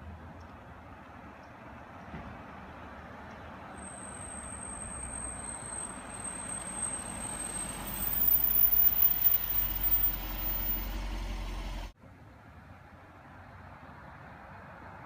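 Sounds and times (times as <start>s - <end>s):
car rolling slowly: 0.0s - 12.3s
brakes squealing: 3.6s - 12.0s.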